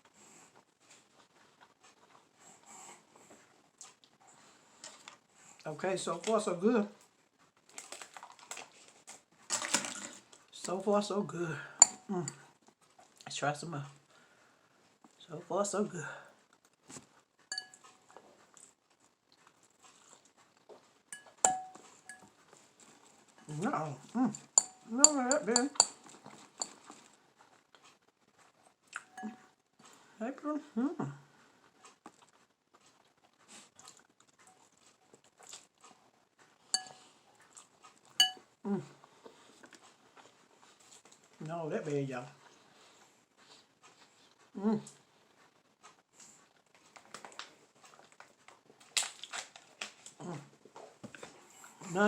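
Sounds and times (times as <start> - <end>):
chewing and mouth sounds: 7.6 - 9.2, 17.6 - 23.3, 28.8 - 29.4, 31.8 - 38.3, 46.2 - 51.8
utensil clinking against bowl: 11.8 - 12.4, 17.5 - 17.8, 21.2 - 22.3, 24.4 - 26.8, 36.8 - 37.0, 38.2 - 38.4
quiet mouth eating sounds: 16.3 - 28.0, 28.8 - 30.1, 31.1 - 41.4.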